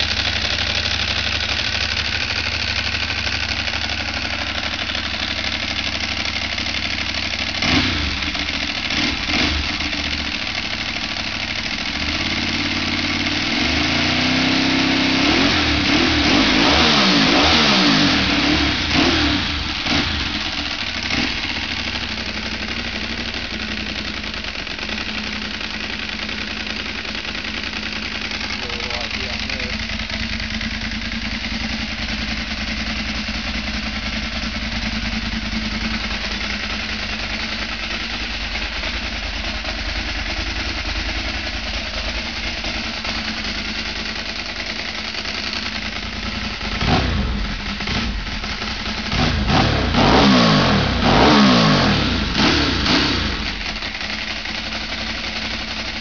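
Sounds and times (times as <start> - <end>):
motorcycle engine idling and revving: 0.0 - 56.0.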